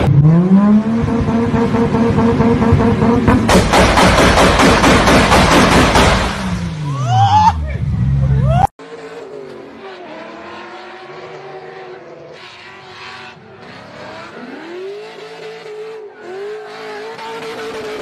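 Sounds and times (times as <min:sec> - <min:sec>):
car engine revving hard: 0:00.0 - 0:06.8, 0:08.9 - 0:18.0.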